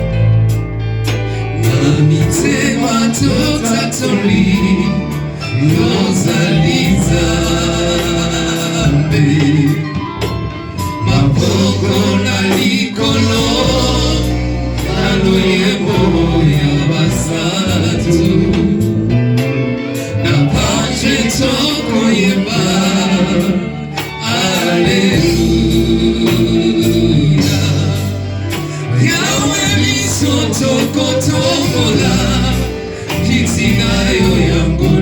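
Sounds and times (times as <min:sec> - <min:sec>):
gospel singing with band: 0:00.0 - 0:35.0.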